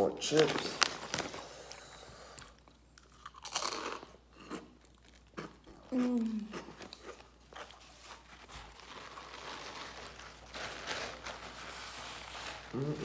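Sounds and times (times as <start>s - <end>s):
chips being chewed: 1.0s - 9.7s
person humming mm: 5.9s - 6.6s, 12.7s - 13.0s.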